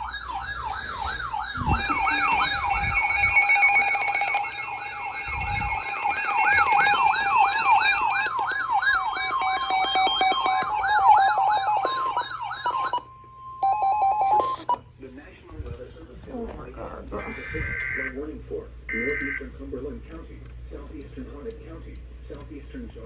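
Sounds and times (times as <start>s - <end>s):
electronic siren yelping: 0.0s - 14.7s, 17.2s - 18.2s, 18.9s - 19.5s
warbling alarm tones: 0.0s - 14.8s, 17.1s - 18.2s, 18.9s - 19.6s.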